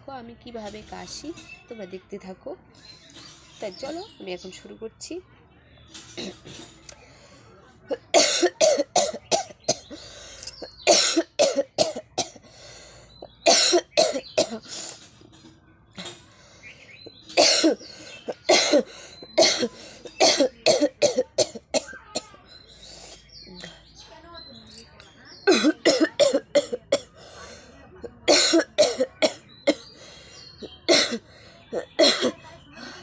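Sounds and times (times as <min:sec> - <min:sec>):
person coughing: 0:07.9 - 0:09.8, 0:17.4 - 0:17.8, 0:18.5 - 0:22.0, 0:28.3 - 0:29.8.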